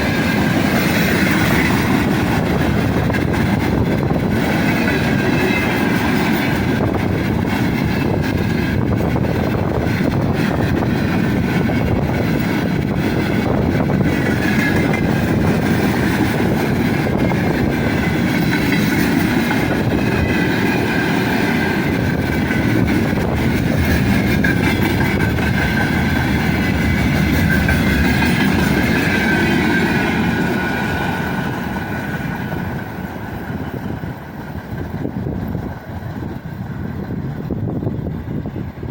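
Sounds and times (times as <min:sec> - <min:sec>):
train wheels clattering on rails: 0:00.0 - 0:38.9.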